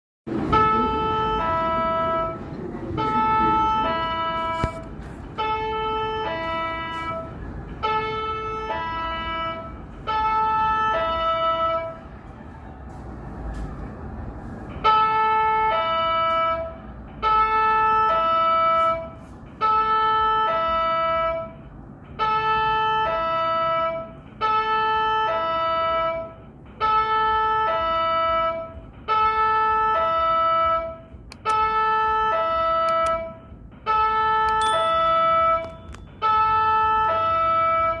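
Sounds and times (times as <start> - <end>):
electronic two-note alert: 34.5 - 36.4.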